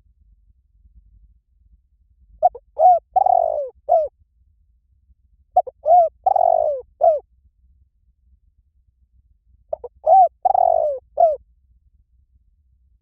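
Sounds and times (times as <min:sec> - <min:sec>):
dove cooing: 0:02.4 - 0:04.1, 0:05.6 - 0:07.2, 0:09.7 - 0:11.4.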